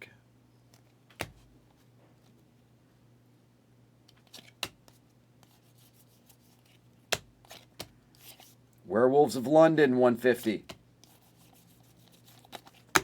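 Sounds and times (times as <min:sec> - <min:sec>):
faint steady hum: 0:00.0 - 0:13.0
cards rustling: 0:04.1 - 0:08.6, 0:10.2 - 0:13.0.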